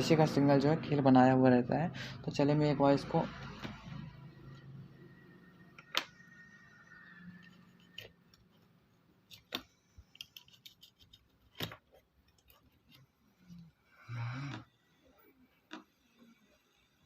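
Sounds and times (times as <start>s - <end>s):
wires clicking and tapping: 5.7s - 14.8s, 15.4s - 16.8s.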